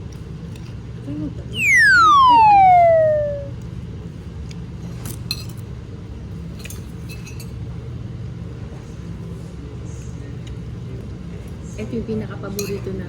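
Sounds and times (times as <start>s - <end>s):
falling whistle-like tone: 1.6s - 3.6s.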